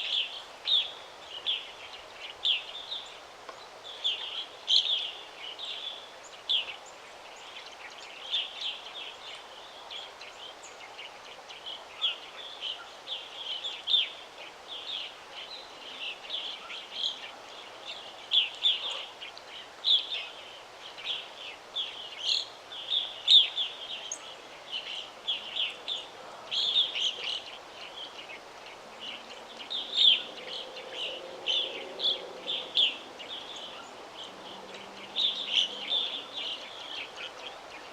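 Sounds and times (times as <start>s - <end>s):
soft background hiss: 0.0s - 37.9s
songbirds chirping: 0.0s - 37.9s.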